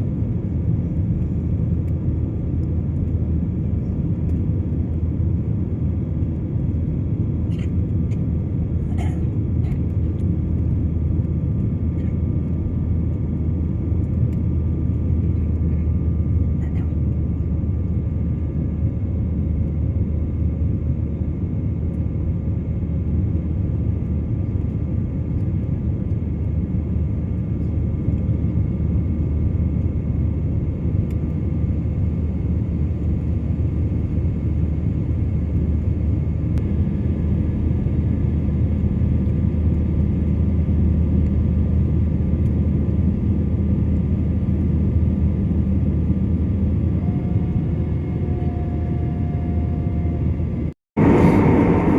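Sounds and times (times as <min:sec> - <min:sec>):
deeper hum: 0:00.0 - 0:51.9
jet engines rumbling: 0:00.0 - 0:51.9.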